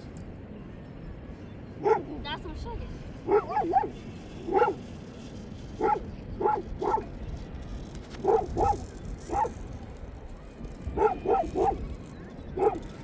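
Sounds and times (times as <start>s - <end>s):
dog yelping barks: 1.8s - 2.1s, 3.3s - 4.8s, 5.8s - 7.1s, 8.2s - 9.6s, 11.0s - 11.8s, 12.6s - 13.0s.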